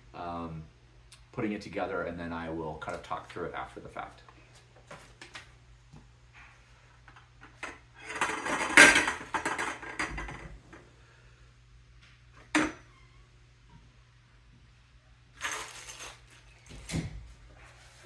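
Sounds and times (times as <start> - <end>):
parts clattering and rustling: 7.0 - 10.8, 15.4 - 18.0.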